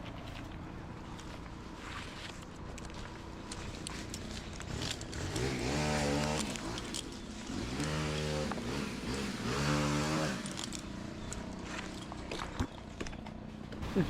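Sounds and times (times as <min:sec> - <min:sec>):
engine revving: 0:03.6 - 0:12.8.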